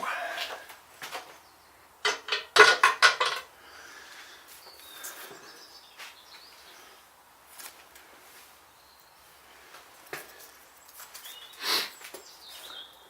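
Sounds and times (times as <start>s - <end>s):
handling metal parts and tools: 2.0s - 3.5s
metallic clinks and knocks: 2.0s - 3.5s.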